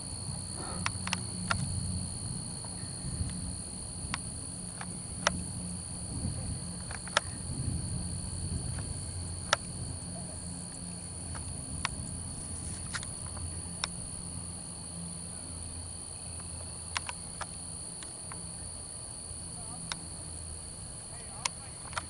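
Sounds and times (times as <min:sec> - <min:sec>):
low hum: 0:00.0 - 0:21.2
crickets chirping: 0:00.0 - 0:22.0
sharp clicks: 0:00.6 - 0:01.8, 0:04.0 - 0:05.4, 0:06.8 - 0:07.4, 0:08.7 - 0:09.7, 0:16.4 - 0:18.4, 0:21.3 - 0:22.0.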